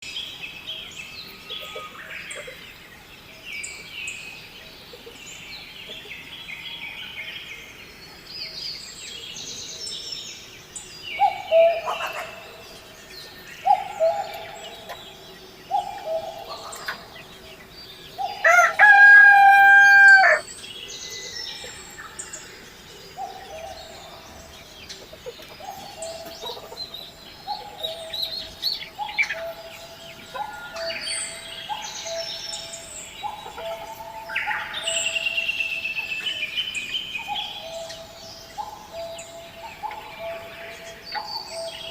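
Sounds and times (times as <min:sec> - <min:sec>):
small birds chirping: 0:00.0 - 0:41.9
chickens calling: 0:10.6 - 0:20.6, 0:21.6 - 0:41.9
rooster crowing: 0:18.3 - 0:20.4.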